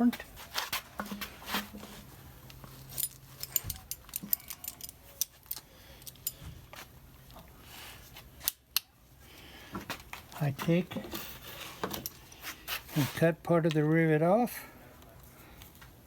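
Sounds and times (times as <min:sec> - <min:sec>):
small metal parts clinking: 0:02.7 - 0:06.5.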